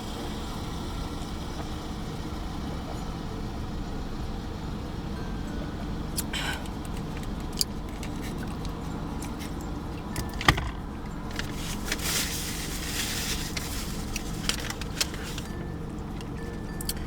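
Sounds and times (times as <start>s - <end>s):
low engine rumble: 0.0s - 17.0s
food packaging rustling and clicks: 6.8s - 17.0s.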